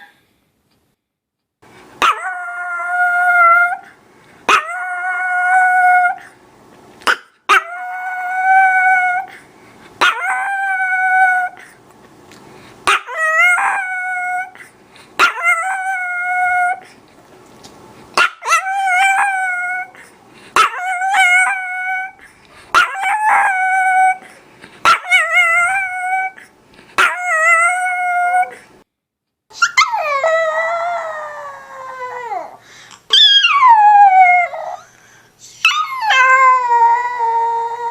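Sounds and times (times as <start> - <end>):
dog howling: 2.0 - 3.9, 4.5 - 6.3, 7.5 - 9.3, 10.0 - 11.6, 12.9 - 14.6, 15.2 - 16.8, 18.3 - 20.0, 20.6 - 22.2, 22.8 - 24.3, 24.9 - 26.4, 27.0 - 28.6, 29.6 - 34.8, 35.6 - 37.9.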